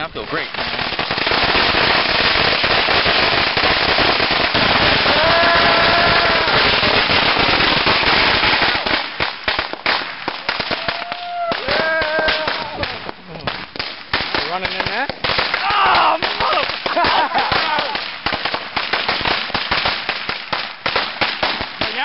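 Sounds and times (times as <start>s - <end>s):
firecrackers crackling and banging: 0.0s - 22.0s
people calling out: 5.1s - 7.0s, 10.7s - 13.1s, 15.6s - 18.0s.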